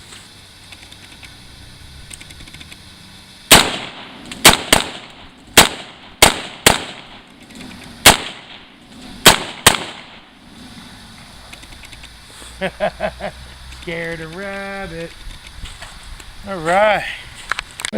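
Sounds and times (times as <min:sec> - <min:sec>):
rifle shots: 0:03.5 - 0:07.3, 0:08.0 - 0:10.3.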